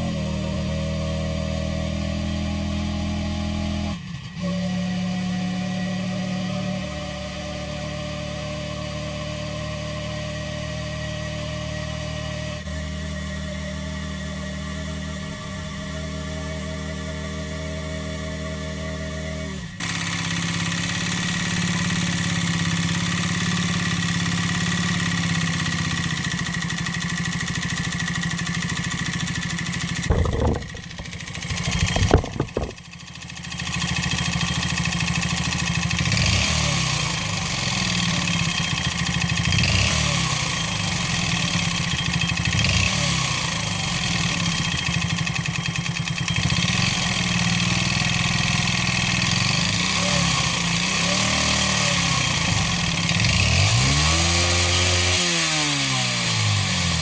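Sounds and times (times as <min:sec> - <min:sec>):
scooter engine with piston slap: 0:19.7 - 0:57.0
sharp knocks: 0:30.0 - 0:32.8.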